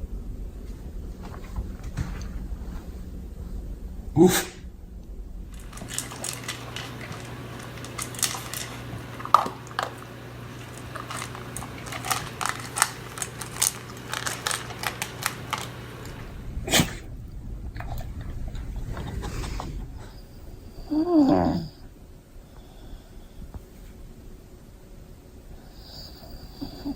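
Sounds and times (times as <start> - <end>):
low hum: 0.0 - 25.8
dog chewing: 5.4 - 20.2.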